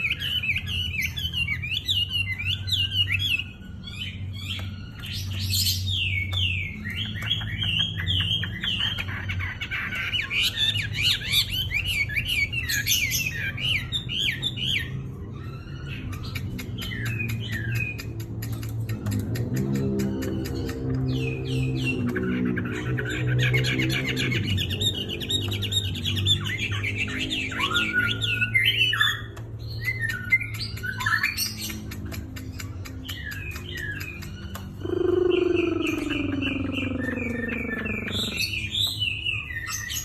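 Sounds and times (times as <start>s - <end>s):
bird singing rapid chirps: 0.0s - 40.0s.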